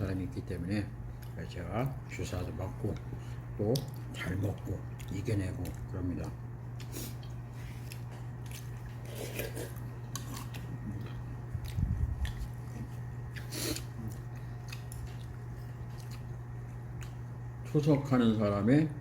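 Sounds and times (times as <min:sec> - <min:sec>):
steady low hum: 0:00.0 - 0:19.0
person chewing food: 0:01.1 - 0:01.4, 0:02.8 - 0:17.5.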